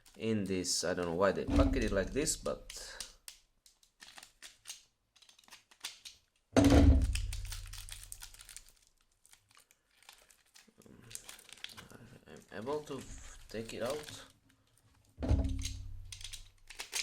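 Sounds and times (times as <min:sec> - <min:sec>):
packaging rustling: 0:00.0 - 0:17.0
loud thump: 0:01.5 - 0:01.9, 0:06.6 - 0:07.1, 0:15.2 - 0:15.9.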